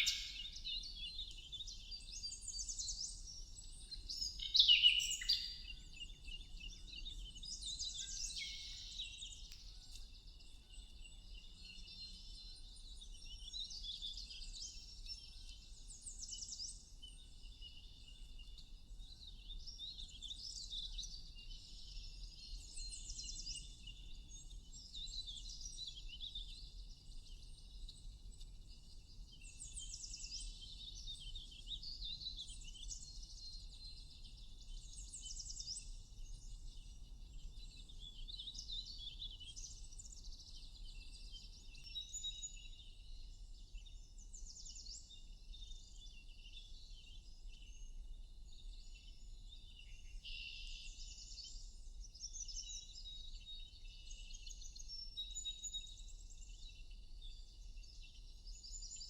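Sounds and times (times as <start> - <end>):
small birds chirping: 0.0 - 59.0.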